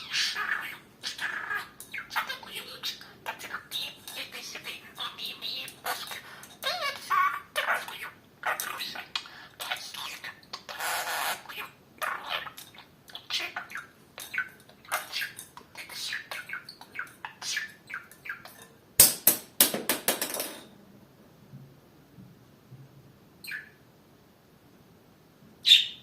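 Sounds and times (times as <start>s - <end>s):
budgerigar chattering: 25.6s - 26.0s
loud sharp bird sounds: 25.6s - 26.0s.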